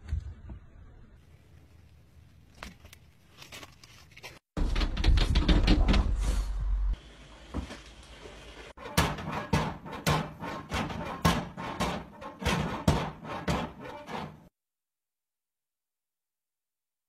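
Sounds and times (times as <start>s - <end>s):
sharp knocks and thumps: 4.6s - 6.2s, 8.8s - 14.5s.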